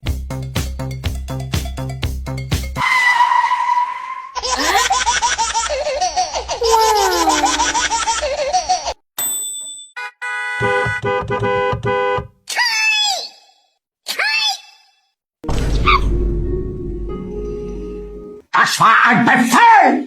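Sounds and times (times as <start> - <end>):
laughter: 4.4 - 9.0.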